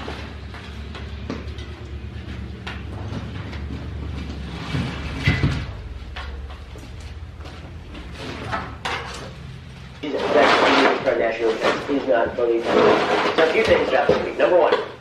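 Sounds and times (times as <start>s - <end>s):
knocks and clunks: 0.0s - 15.0s
low mechanical hum: 0.0s - 15.0s
loud clatter: 10.1s - 14.9s.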